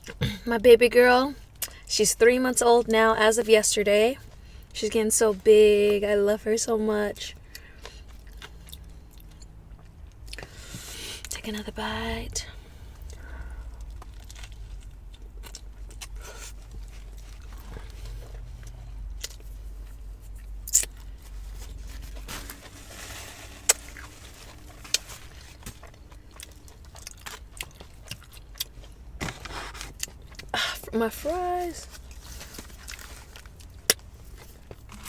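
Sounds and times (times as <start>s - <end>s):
person chewing crunchy food: 7.4s - 11.3s, 12.8s - 22.7s, 23.5s - 30.6s.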